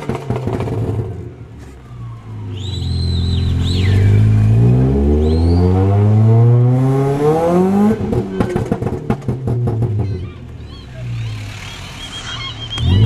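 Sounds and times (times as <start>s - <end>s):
exhaust pops and bangs: 0.0s - 1.2s, 7.7s - 10.2s
car engine revving: 0.0s - 13.0s.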